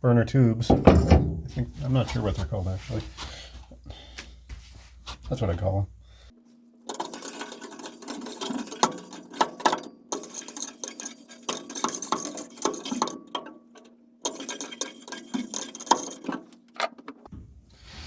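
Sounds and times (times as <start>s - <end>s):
faint steady hum: 0.0s - 6.7s
metal parts and tools clinking: 0.7s - 1.6s, 6.9s - 17.2s.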